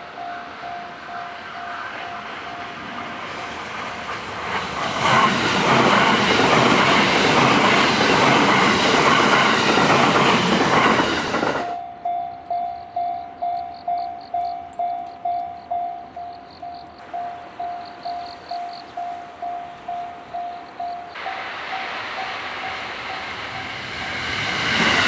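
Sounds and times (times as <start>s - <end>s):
crossing warning bell ringing: 0.0s - 3.2s, 11.6s - 24.4s
electric train rushing past: 0.0s - 25.0s.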